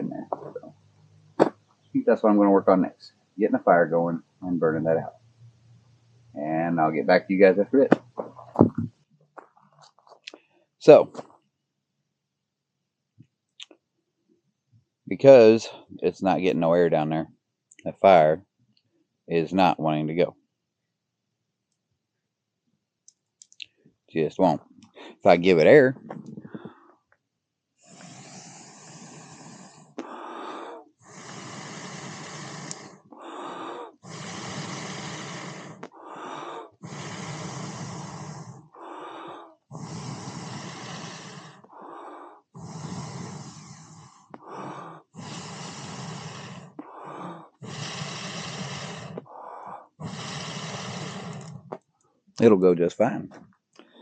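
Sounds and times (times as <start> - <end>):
person blowing on a fire: 27.8 - 51.8
quick breaths in: 27.8 - 51.8.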